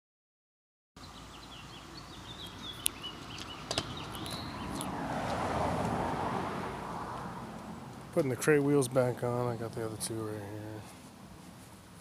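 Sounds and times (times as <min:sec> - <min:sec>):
small birds chirping: 0:01.0 - 0:05.2.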